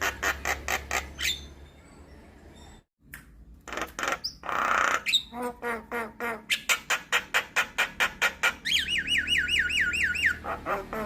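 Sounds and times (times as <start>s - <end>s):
bird harsh repeated calls: 0.0s - 1.6s, 3.7s - 11.0s
bird harsh squawk: 3.7s - 11.0s.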